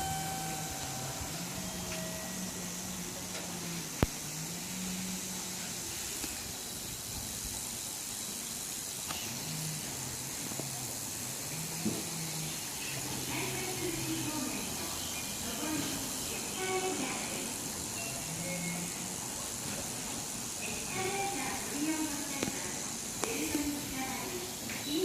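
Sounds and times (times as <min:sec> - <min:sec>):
overhead wire humming: 0:00.0 - 0:05.1
steady hiss: 0:00.0 - 0:25.0.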